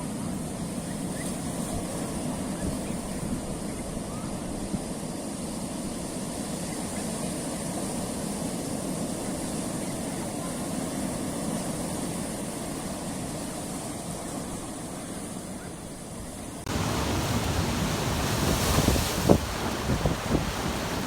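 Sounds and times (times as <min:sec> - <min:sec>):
waves on rocky shore: 0:16.6 - 0:21.0
wind buffeting microphone: 0:16.7 - 0:21.0.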